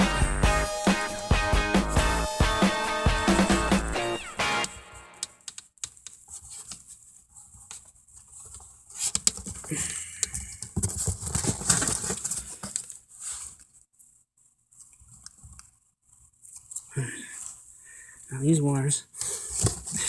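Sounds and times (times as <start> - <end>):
music track: 0.0 - 5.4.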